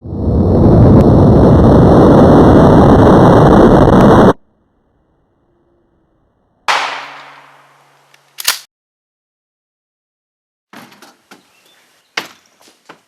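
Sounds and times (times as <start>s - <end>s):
loud rumbling rush: 0.0s - 8.1s
sharp bang: 6.7s - 8.1s.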